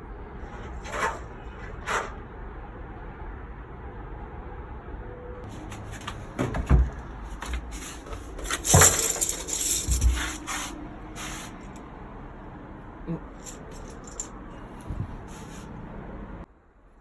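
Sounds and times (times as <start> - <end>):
handling knocks and clatters: 5.7 - 10.7, 13.4 - 14.4
short hissing rush: 9.6 - 11.7, 15.2 - 15.8.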